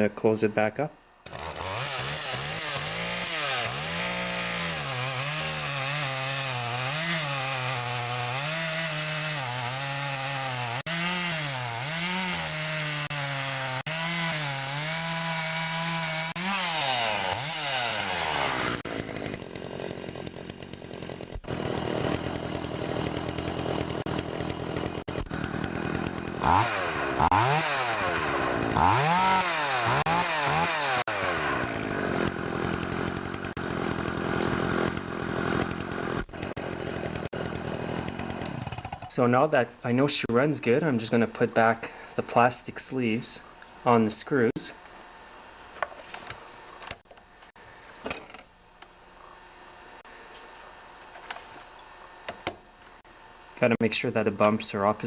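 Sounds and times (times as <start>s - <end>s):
chainsaw cutting wood at high revs: 1.2s - 39.1s.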